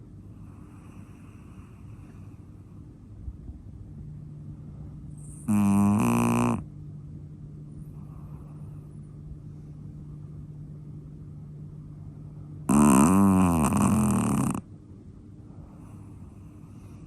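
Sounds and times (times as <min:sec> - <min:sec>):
low steady hum: 0:00.0 - 0:17.0
dog snoring: 0:00.2 - 0:02.6, 0:05.2 - 0:06.7, 0:07.9 - 0:09.0, 0:12.6 - 0:14.7.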